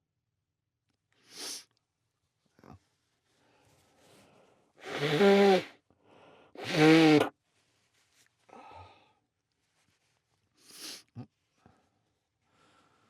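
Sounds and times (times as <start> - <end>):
sharp inhale: 1.2 - 1.7
soft sniff: 1.2 - 1.7, 9.6 - 13.0
person sneezing: 1.3 - 1.7.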